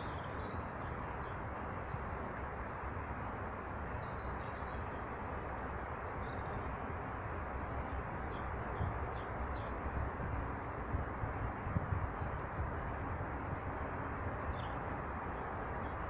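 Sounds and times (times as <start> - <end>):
small birds chirping: 0.0 - 5.0
steady rushing noise: 9.8 - 15.2.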